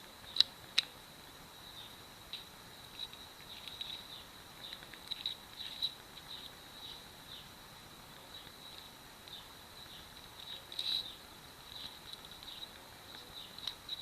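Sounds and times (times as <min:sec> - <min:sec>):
steady high-pitched whine: 0:00.0 - 0:14.0
light clicks and small scrapes: 0:02.3 - 0:06.5, 0:10.1 - 0:14.0.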